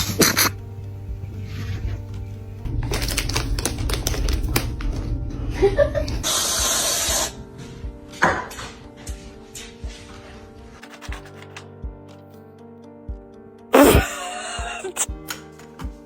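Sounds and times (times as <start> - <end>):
background music: 0.0 - 16.0
plastic bag crinkling: 2.8 - 5.0.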